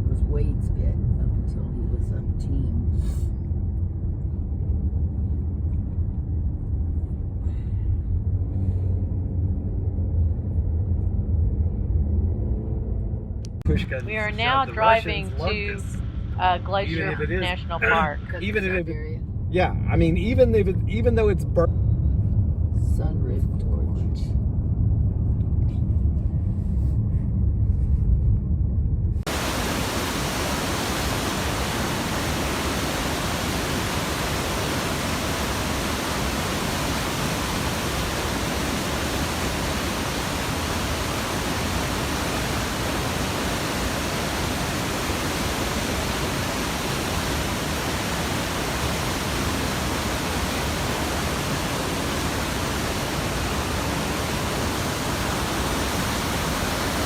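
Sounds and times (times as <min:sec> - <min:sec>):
road rumble inside a car: 0:00.0 - 0:57.0
waterfall rushing: 0:13.7 - 0:15.8, 0:29.3 - 0:57.0.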